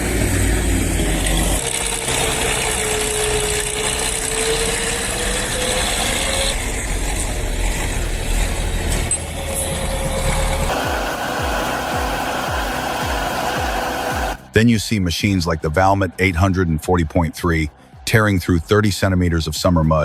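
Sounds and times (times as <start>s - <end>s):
heavy vehicle engine running: 0.0s - 14.6s.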